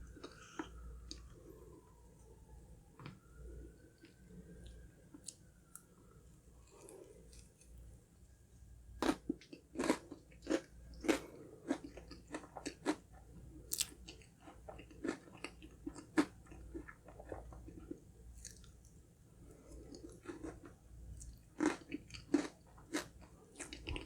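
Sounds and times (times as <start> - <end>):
crunchy chewing: 9.0 - 24.0.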